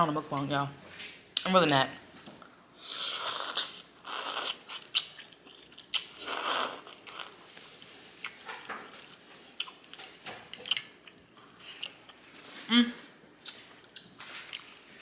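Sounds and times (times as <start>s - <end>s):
chewing with mouth clicks: 3.4s - 12.2s, 13.4s - 15.0s
loud noodle slurps: 6.2s - 7.3s.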